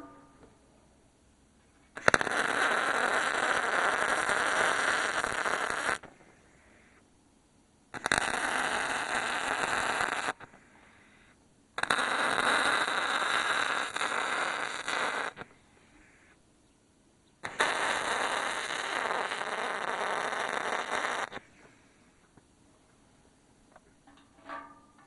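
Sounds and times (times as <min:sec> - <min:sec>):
welder crackling and spattering: 0:02.0 - 0:06.2, 0:08.0 - 0:10.5, 0:11.8 - 0:15.5, 0:17.4 - 0:21.5.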